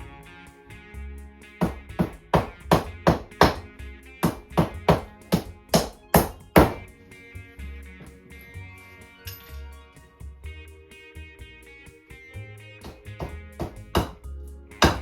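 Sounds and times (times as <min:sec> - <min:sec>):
background music with steady tones: 0:00.0 - 0:15.0
hammer tapping nails into wood: 0:01.6 - 0:06.9, 0:12.8 - 0:14.2.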